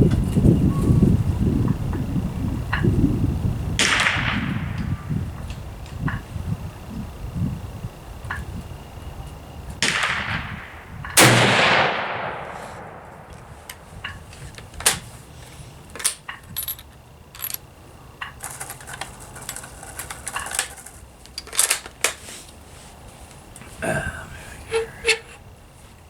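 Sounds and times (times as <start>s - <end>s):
rifle shot: 3.8s - 4.8s, 9.8s - 13.5s
quieter bang: 9.8s - 14.1s.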